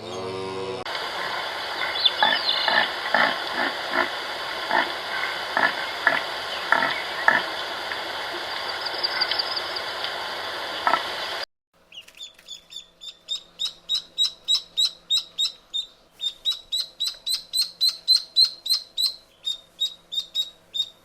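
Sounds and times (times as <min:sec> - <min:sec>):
pig grunting and squealing: 0:00.0 - 0:07.6
steady background hiss: 0:00.0 - 0:21.0.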